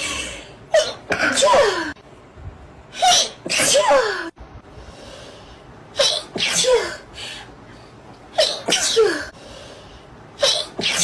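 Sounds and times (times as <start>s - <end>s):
person sneezing: 10.4s - 11.0s.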